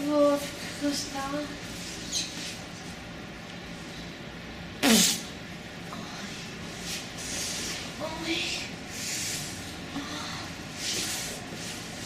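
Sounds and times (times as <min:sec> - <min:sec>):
short fart: 0:04.8 - 0:05.3.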